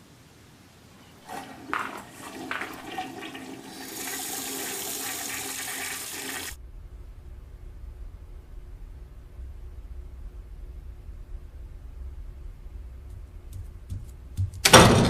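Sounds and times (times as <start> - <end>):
rushing water: 1.2 - 6.6
low hum: 6.5 - 15.0
sharp clicks and knocks: 13.1 - 15.0.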